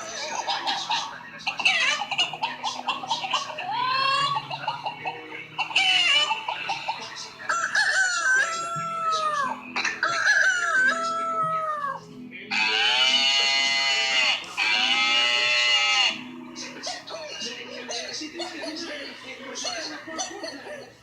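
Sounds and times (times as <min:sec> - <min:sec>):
rooster-like crowing and clucking: 0:07.5 - 0:12.0.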